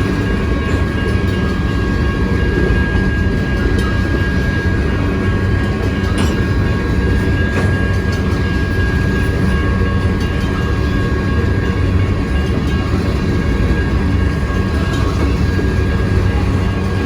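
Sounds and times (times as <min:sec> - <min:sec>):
train wheels rumbling on rail: 0:00.0 - 0:17.0.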